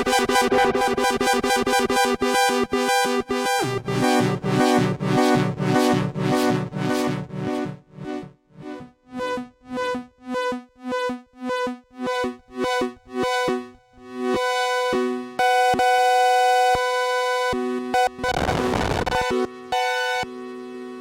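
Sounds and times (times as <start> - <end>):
held synthesizer chords: 0.0 - 16.7
pulsing synthesizer chord: 0.0 - 16.7.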